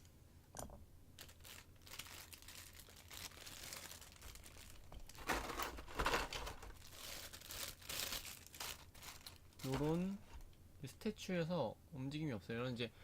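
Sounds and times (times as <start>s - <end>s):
plastic figure rustling: 1.2s - 10.5s.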